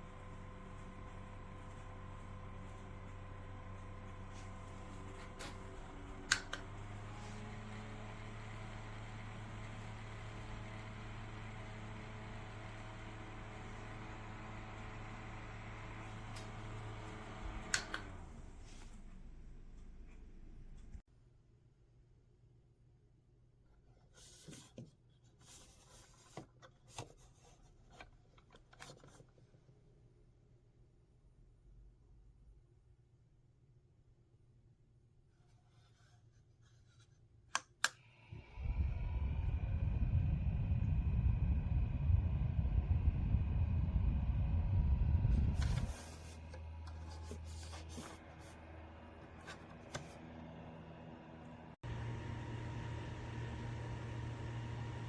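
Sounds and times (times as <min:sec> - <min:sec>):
desk fan humming: 0:00.0 - 0:19.0, 0:38.3 - 0:55.0
low steady hum: 0:38.2 - 0:55.0.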